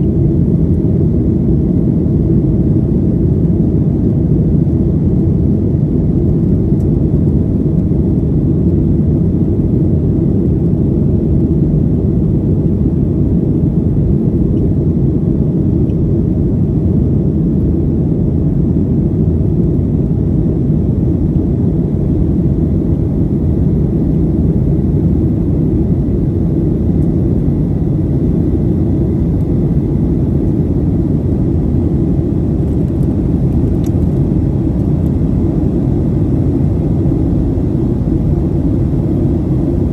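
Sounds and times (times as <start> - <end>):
airplane cabin rumble: 0.0 - 39.9.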